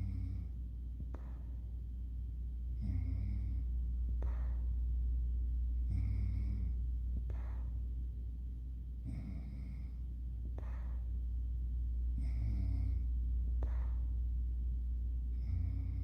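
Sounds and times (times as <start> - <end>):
person snoring: 0.0 - 0.6, 2.8 - 3.7, 5.9 - 6.8, 9.0 - 10.0, 12.2 - 13.1, 15.3 - 16.0
steady low hum: 0.0 - 16.0.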